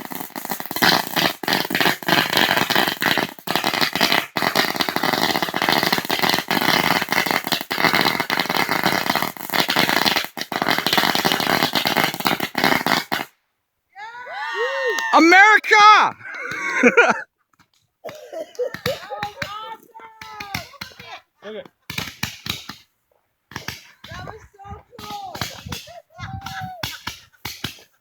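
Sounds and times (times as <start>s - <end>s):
firecrackers popping: 0.0s - 13.4s, 14.9s - 28.0s
person shouting: 14.0s - 17.2s, 18.8s - 20.8s, 24.1s - 27.0s.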